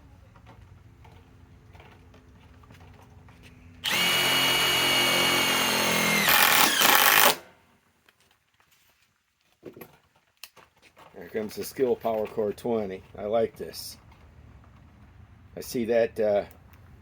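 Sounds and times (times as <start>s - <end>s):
impact driver driving screw: 3.8s - 7.4s.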